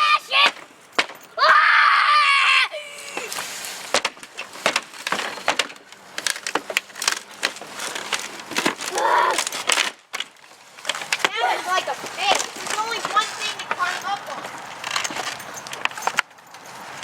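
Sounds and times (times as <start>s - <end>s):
person yelling: 0.0s - 0.6s, 1.4s - 3.4s, 8.9s - 9.4s, 11.3s - 11.9s
wooden boards being smashed: 0.0s - 1.3s, 3.0s - 14.2s.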